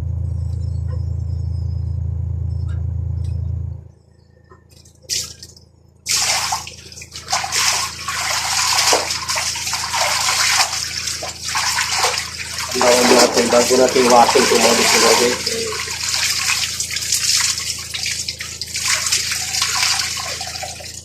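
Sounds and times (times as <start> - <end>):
washing machine motor humming: 0.0 - 21.0
water pouring into tub: 6.1 - 21.0.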